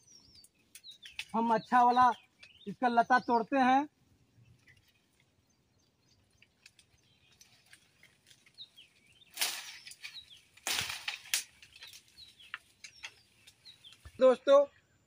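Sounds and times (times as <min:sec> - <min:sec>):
vine rustling and cracking: 0:06.1 - 0:14.2.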